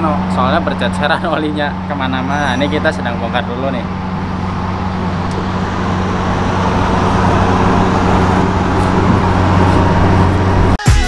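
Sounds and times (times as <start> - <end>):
mechanical hum: 0.0 - 10.8
rushing noise: 1.7 - 10.8.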